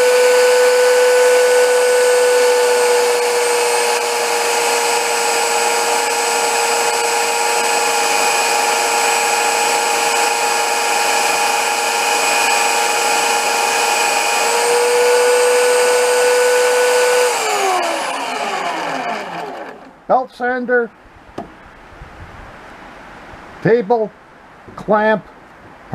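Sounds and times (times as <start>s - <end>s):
belt sander sanding wood: 0.0s - 20.0s.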